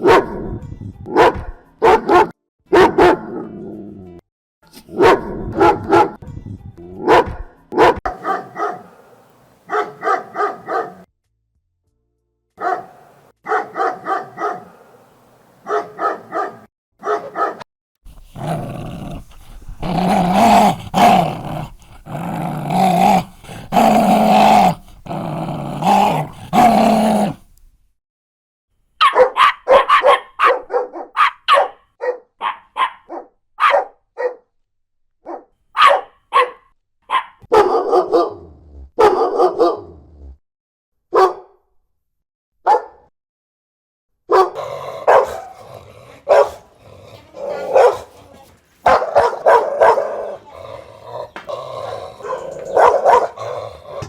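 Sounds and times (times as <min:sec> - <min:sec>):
dogs barking: 0:00.0 - 0:00.4, 0:01.1 - 0:03.4, 0:05.0 - 0:06.2, 0:07.1 - 0:11.1, 0:12.6 - 0:27.4, 0:29.0 - 0:34.4, 0:35.3 - 0:38.4, 0:39.0 - 0:39.9, 0:41.1 - 0:41.5, 0:42.7 - 0:43.0, 0:44.3 - 0:54.0
big dog barking deeply: 0:00.0 - 0:03.7, 0:04.9 - 0:06.2, 0:07.0 - 0:11.1, 0:12.6 - 0:27.5, 0:29.0 - 0:34.4, 0:35.3 - 0:40.4, 0:41.2 - 0:41.5, 0:44.3 - 0:48.2, 0:48.8 - 0:54.0.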